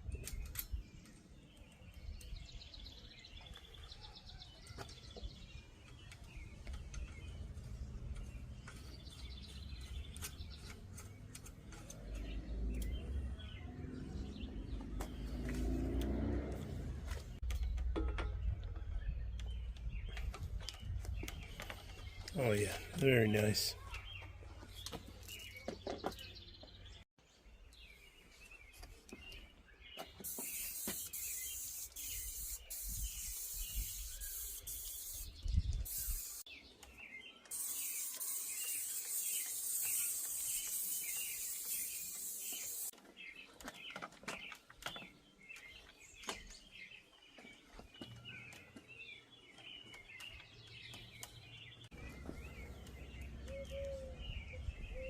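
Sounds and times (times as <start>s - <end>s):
small songbirds chirping: 0.0s - 55.0s
high hiss: 30.3s - 36.5s, 37.5s - 42.9s.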